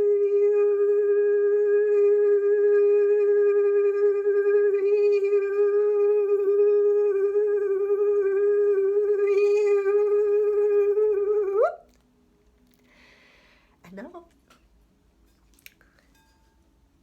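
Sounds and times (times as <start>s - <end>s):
woman singing long tone: 0.0s - 11.9s.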